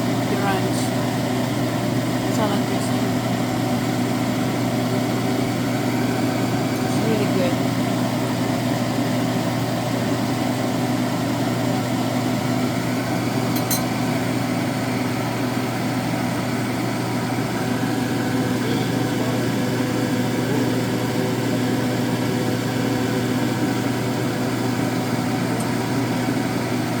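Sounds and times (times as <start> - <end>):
steady machine hum: 0.0 - 27.0.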